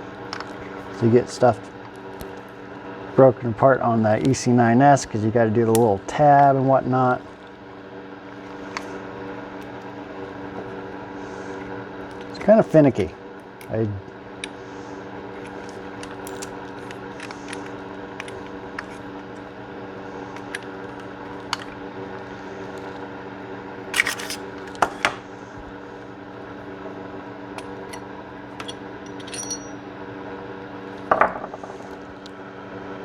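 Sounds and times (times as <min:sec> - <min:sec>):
metallic clicks and clinks: 0:28.6 - 0:29.8.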